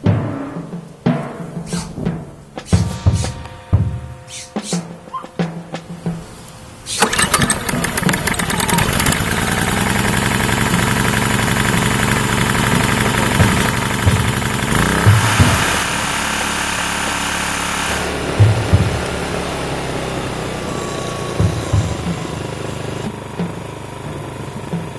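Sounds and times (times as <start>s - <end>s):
generator engine running: 5.6s - 24.9s.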